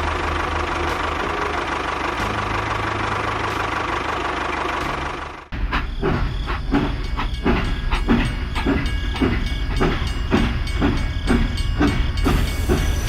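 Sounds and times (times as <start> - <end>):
low train rumble: 0.0 - 13.0
train chugging rhythmically: 0.0 - 13.0.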